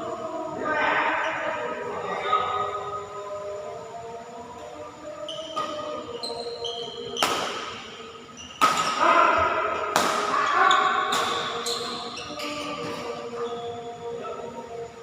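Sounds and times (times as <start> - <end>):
rackets hitting shuttlecock: 8.6 - 9.0, 9.9 - 10.4, 11.1 - 11.6.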